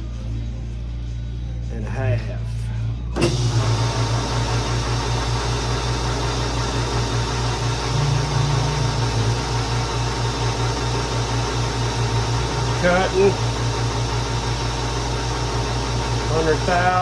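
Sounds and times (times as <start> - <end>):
metal lathe running: 3.2 - 17.0.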